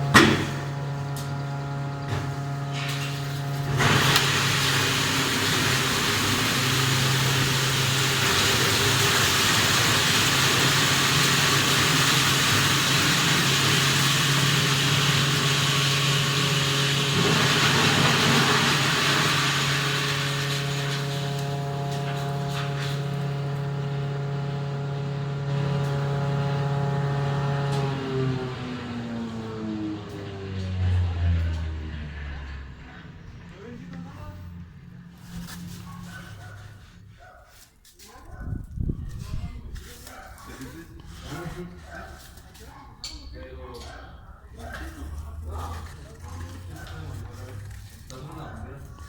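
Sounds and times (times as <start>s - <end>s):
motor hum: 0.0s - 37.5s
ice grinding: 0.8s - 26.2s, 44.5s - 49.0s.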